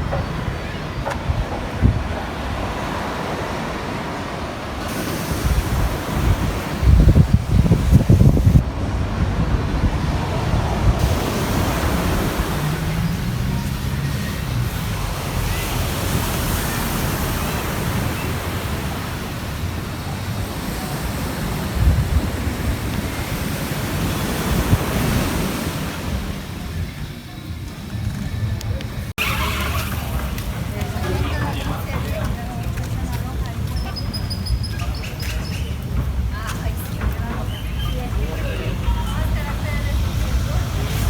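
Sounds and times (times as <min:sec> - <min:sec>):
ocean surf breaking on a beach: 0:00.0 - 0:27.6
wind buffeting microphone: 0:00.0 - 0:41.0.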